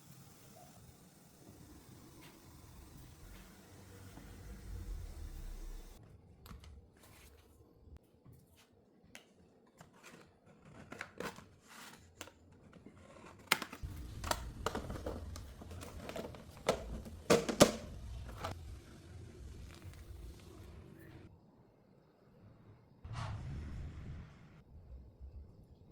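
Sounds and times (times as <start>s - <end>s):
low hum: 1.6s - 6.0s, 23.1s - 25.9s.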